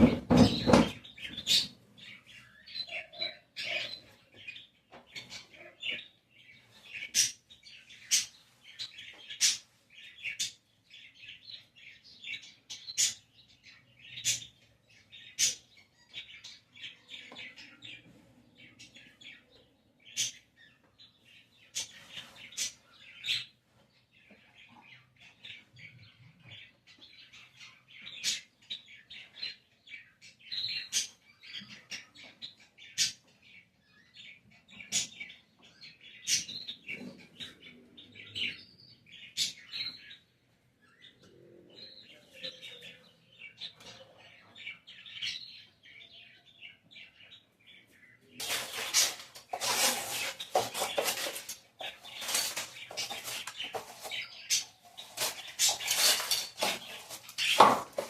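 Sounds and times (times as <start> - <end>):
small birds chirping: 0.0 - 58.0.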